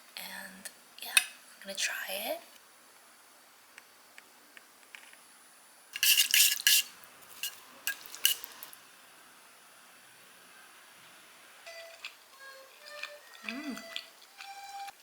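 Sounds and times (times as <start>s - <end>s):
utensils clinking against bowl: 6.0s - 8.6s.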